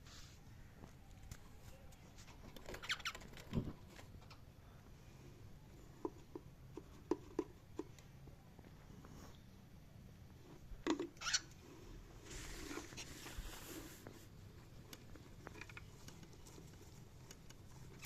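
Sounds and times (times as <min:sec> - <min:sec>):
scratching and rustling: 0:00.0 - 0:04.4, 0:10.3 - 0:18.0
faint bird squeaks: 0:02.6 - 0:03.5, 0:11.2 - 0:11.6.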